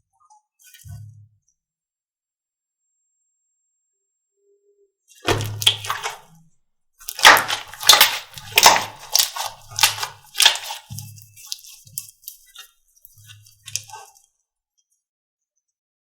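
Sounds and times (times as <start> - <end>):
slime squeezed by hand: 5.2 - 6.3, 7.0 - 12.6, 13.2 - 14.1.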